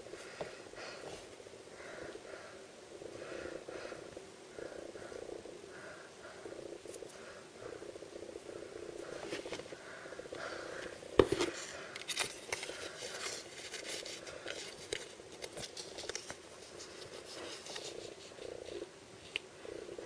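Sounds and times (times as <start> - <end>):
low steady hum: 0.0 - 20.0
packaging crinkling: 11.2 - 18.0.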